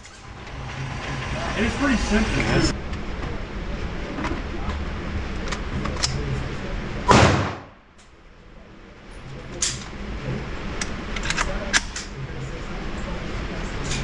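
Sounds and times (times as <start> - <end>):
loud gunshot with echo: 7.1 - 7.8.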